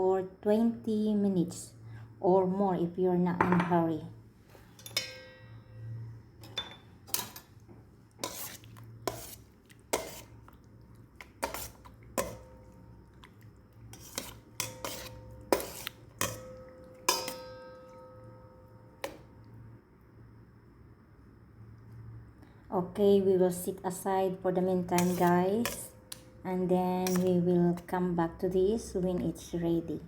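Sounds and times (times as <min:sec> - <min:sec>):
utensil clinking against a bowl: 0:11.2 - 0:12.8, 0:13.9 - 0:18.4.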